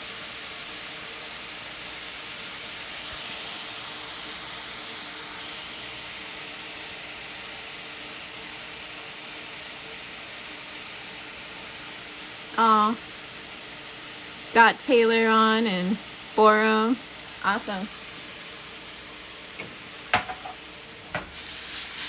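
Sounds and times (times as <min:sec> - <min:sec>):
mushrooms and onion sizzling in pan: 0:00.0 - 0:22.0.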